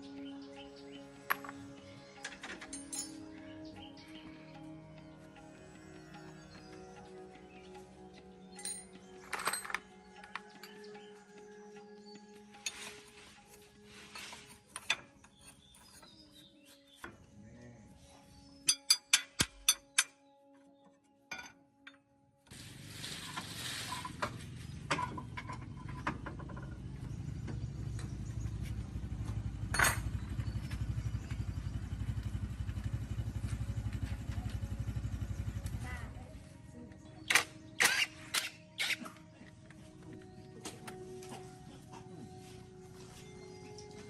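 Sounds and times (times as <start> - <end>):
engine running: 22.5 - 44.0.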